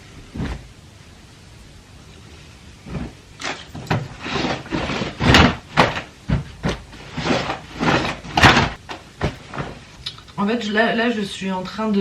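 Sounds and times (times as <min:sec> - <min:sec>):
fabric swishes: 0:00.2 - 0:00.7, 0:02.8 - 0:09.9.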